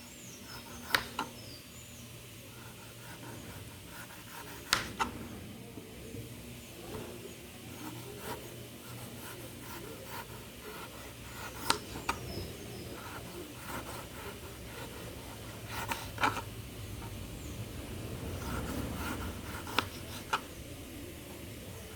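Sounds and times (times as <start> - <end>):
knife scraping fruit pulp: 7.8 - 17.2, 18.3 - 20.6.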